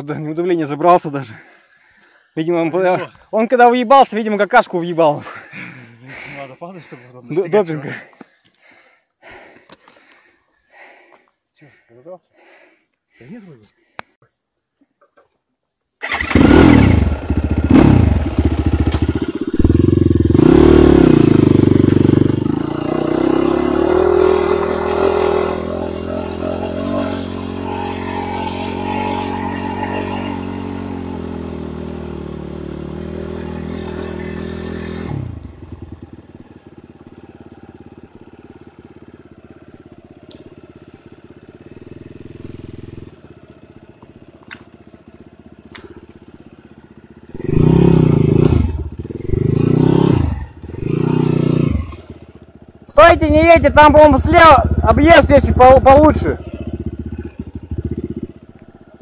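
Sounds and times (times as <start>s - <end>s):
dirt bike engine revving: 16.0s - 58.9s.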